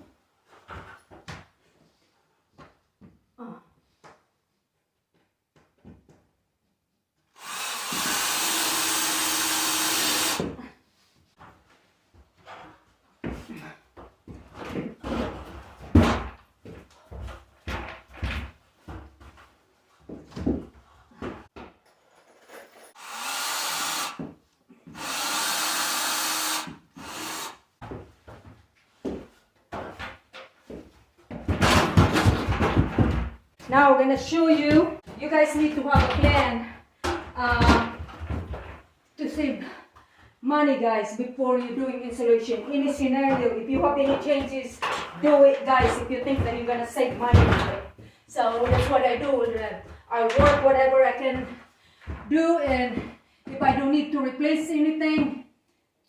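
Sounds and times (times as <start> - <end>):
power tool running: 7.4 - 10.4, 23.0 - 24.2, 24.9 - 27.6.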